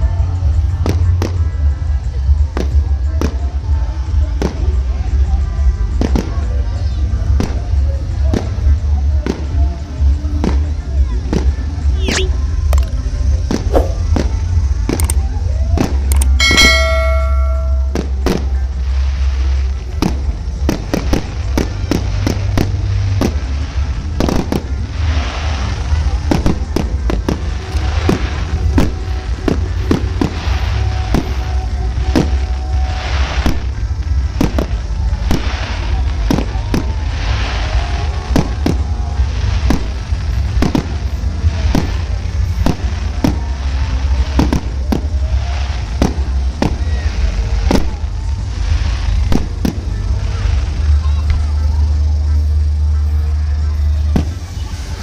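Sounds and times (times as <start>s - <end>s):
fireworks bangs and crackles: 0.0s - 55.0s
low rumble: 11.8s - 15.3s.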